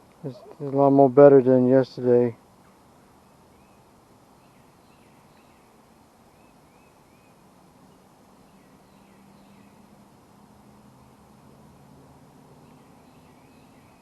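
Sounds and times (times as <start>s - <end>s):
steady outdoor hiss: 0.0s - 14.0s
bird chirping quickly: 12.5s - 14.0s.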